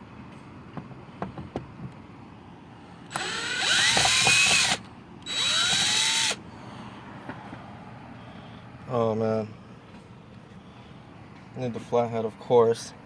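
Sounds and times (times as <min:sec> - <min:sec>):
cordless drill motor whining: 0:03.1 - 0:06.4.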